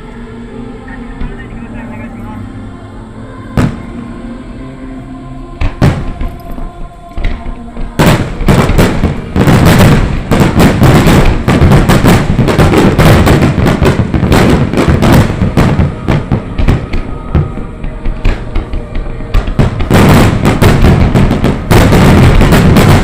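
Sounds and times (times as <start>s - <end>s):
music: 0.0s - 23.0s
fireworks booms and crackles: 3.6s - 3.9s, 5.6s - 23.0s.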